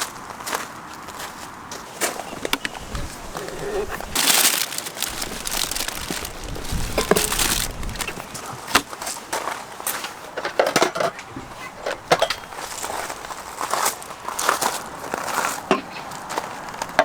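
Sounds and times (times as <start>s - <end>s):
objects knocking and clinking: 4.2s - 8.2s.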